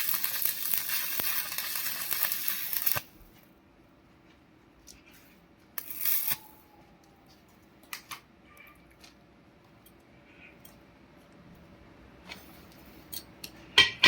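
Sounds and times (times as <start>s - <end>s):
welding arc crackle: 0.0s - 3.2s, 5.8s - 6.5s.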